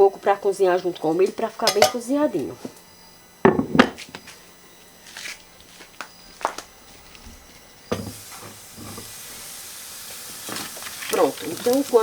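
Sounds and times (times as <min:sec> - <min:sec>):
pot and utensils clattering: 0:01.3 - 0:02.1
light knocks on pot: 0:03.5 - 0:04.0, 0:07.9 - 0:09.1.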